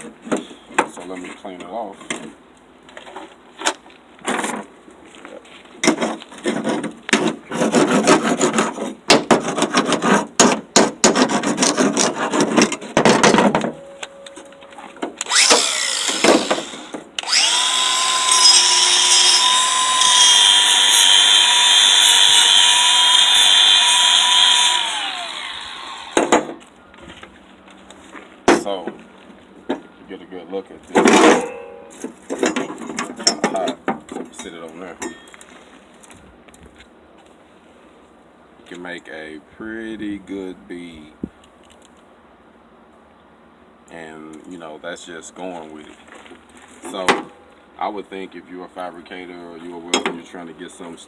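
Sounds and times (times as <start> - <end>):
angle grinder running: 15.2 - 26.5.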